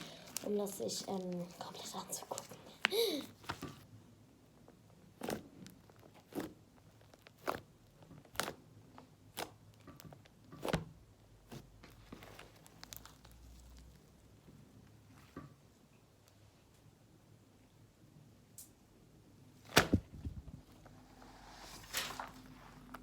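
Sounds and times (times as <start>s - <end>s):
slime squeezed with crunchy pops: 5.1s - 7.7s.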